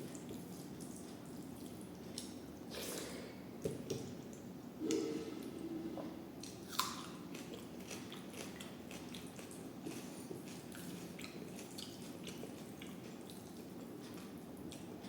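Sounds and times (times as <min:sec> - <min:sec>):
person chewing food: 0:06.4 - 0:15.0.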